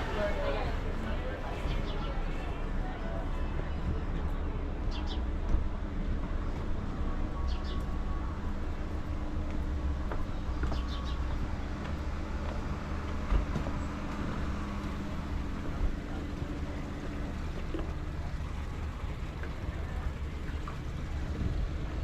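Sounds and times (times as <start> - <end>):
large engine humming: 0.0 - 22.0.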